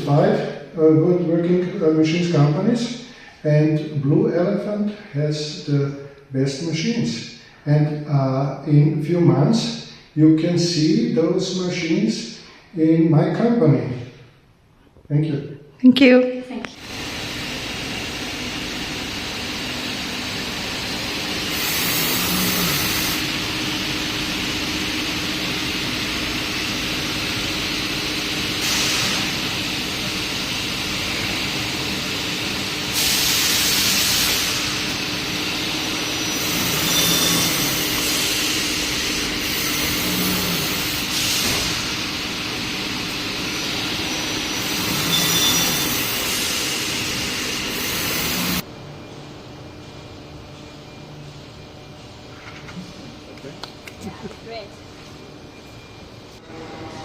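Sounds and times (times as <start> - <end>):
drilling machine hum: 16.8 - 48.8.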